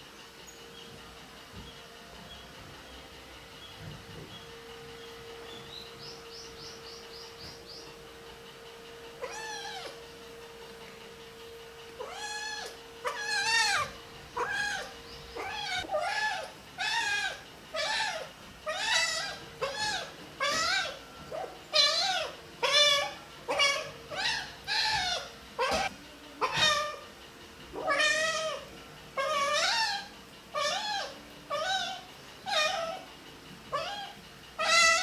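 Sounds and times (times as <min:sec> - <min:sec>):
kitten meowing: 0:09.2 - 0:10.0, 0:12.0 - 0:21.0, 0:21.7 - 0:27.0, 0:27.8 - 0:33.0, 0:33.7 - 0:35.0.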